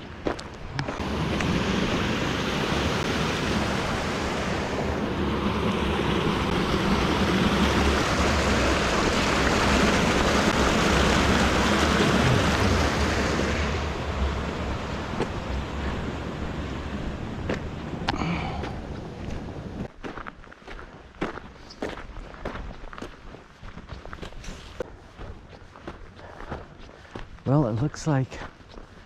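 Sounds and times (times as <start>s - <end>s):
creek water rushing: 0.4s - 19.8s.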